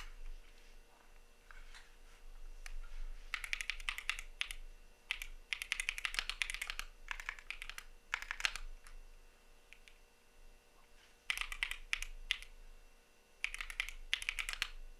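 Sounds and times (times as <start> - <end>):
mechanical keyboard typing: 3.3 - 9.0, 11.3 - 12.5, 13.4 - 14.8.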